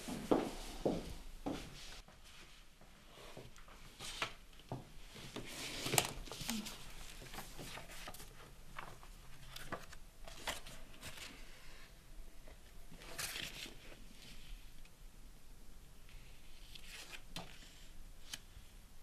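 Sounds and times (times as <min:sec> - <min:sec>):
books rustling and scraping: 0:05.1 - 0:11.6.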